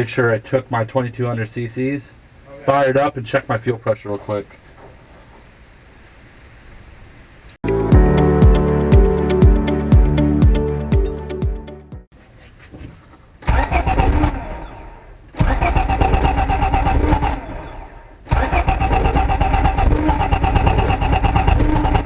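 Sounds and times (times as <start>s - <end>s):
car engine starting: 12.4s - 22.0s.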